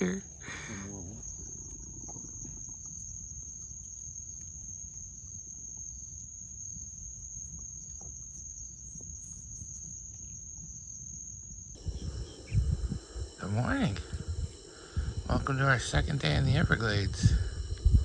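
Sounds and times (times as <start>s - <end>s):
insects trilling: 0.0s - 18.0s
faint low rumble: 11.8s - 18.0s.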